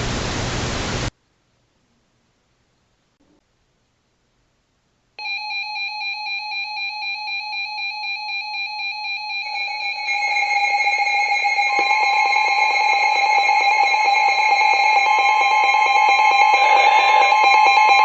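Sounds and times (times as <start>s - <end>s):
pulsing electronic alarm tones: 5.2s - 18.0s.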